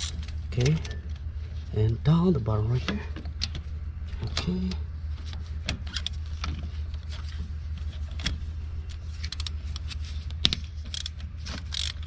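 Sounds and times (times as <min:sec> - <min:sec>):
steady low hum: 0:00.0 - 0:12.0
wrench metallic clicks: 0:10.9 - 0:12.0.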